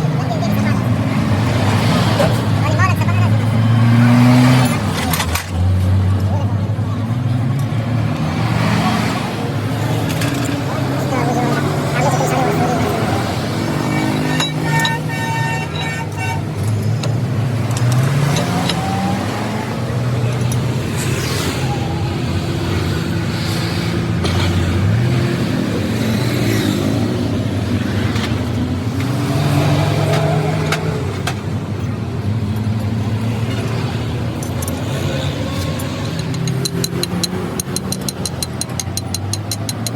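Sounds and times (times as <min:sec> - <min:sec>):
vehicle engines running: 0:00.0 - 0:39.9
vehicle horn: 0:13.8 - 0:16.5.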